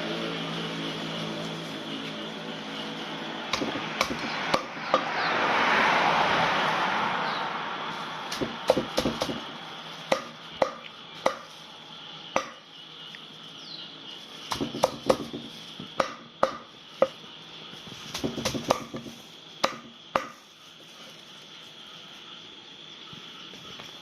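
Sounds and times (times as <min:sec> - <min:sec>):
rush of noise: 0:03.1 - 0:09.8
knife chopping on cutting board: 0:03.5 - 0:05.1, 0:08.3 - 0:09.4, 0:10.1 - 0:11.5, 0:12.4 - 0:12.6, 0:14.5 - 0:16.6, 0:18.2 - 0:20.4.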